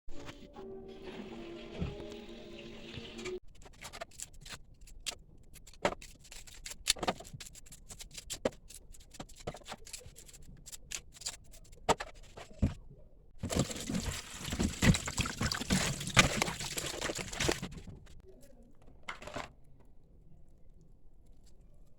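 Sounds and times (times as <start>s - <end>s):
scraping and rustling: 13.4s - 18.2s.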